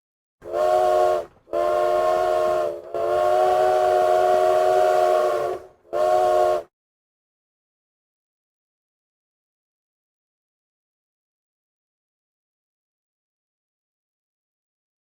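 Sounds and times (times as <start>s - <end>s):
steam locomotive whistle blasts: 0.4s - 6.7s.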